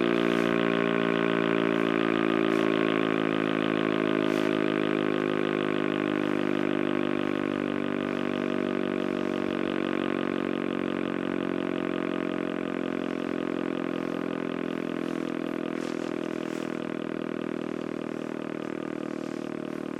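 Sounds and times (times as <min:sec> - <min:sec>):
warning siren wailing: 0:00.0 - 0:11.0.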